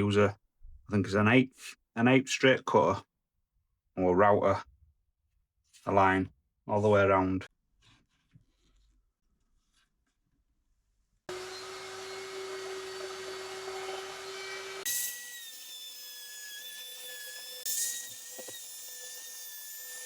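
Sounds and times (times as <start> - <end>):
router whine cutting wood: 11.3 - 20.0.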